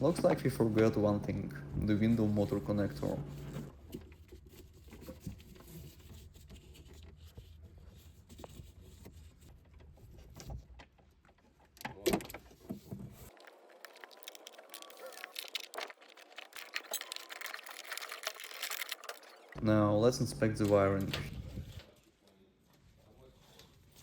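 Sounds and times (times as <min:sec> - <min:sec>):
low steady hum: 0:00.0 - 0:03.9, 0:15.0 - 0:21.8.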